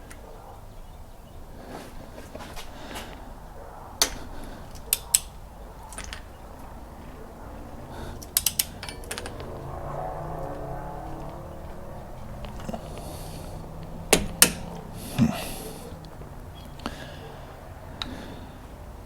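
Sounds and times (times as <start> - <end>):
faint ratcheting: 8.1 - 9.5
torque wrench clicks: 8.3 - 9.3.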